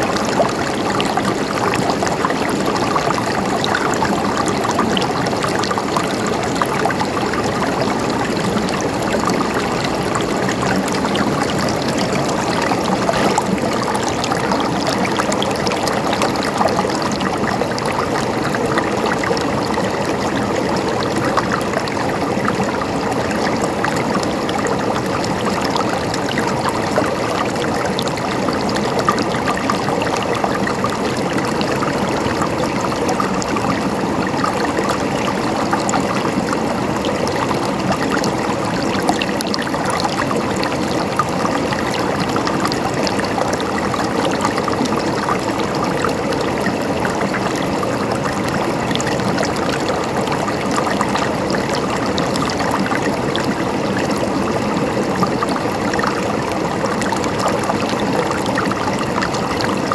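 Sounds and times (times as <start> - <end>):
small water splashes: 0.0 - 59.9
stream flowing over rocks: 0.0 - 59.9.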